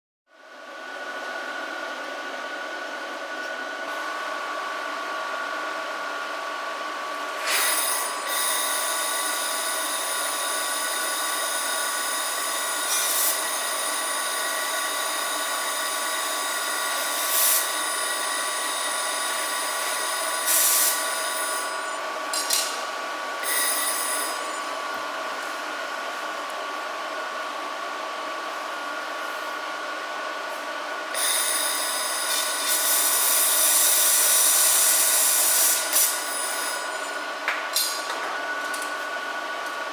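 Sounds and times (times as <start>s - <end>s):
laser welder whine and hiss: 7.3s - 25.9s, 31.1s - 37.4s
welder bursts: 19.0s - 22.5s.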